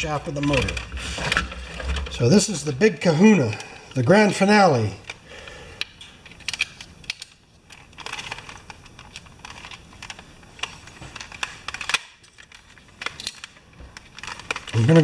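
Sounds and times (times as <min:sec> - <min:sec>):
plastic parts scraping: 0:00.0 - 0:02.6, 0:06.2 - 0:15.0
plastic parts clicking: 0:05.8 - 0:15.0.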